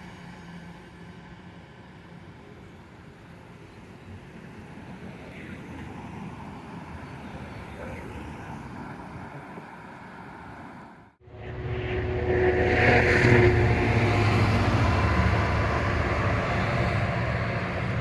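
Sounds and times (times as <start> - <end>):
diesel locomotive engine: 0.0 - 18.0
freight train rumble: 11.2 - 18.0.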